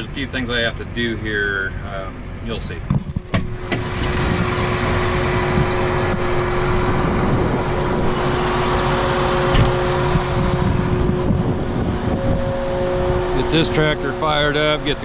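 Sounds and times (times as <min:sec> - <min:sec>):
machine humming: 0:03.1 - 0:15.0.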